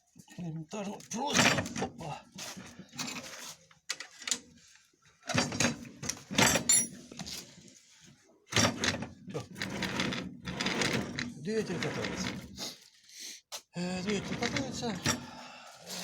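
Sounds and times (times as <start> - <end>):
metal parts knocking and clanking: 1.3 - 1.8, 5.3 - 7.1
carriage rolling on rails: 8.5 - 12.5, 14.0 - 15.2.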